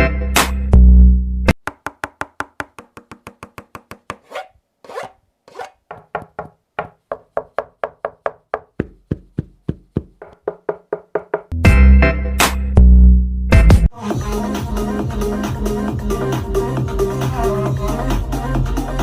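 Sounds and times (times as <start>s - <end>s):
heavy bass beat: 11.5s - 12.0s.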